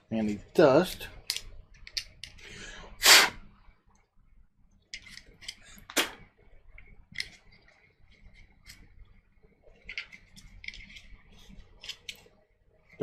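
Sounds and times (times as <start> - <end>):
plastic and metal parts clicking: 0.9 - 2.4, 4.9 - 5.9, 7.1 - 8.9, 9.8 - 12.4
short hiss: 3.0 - 3.4.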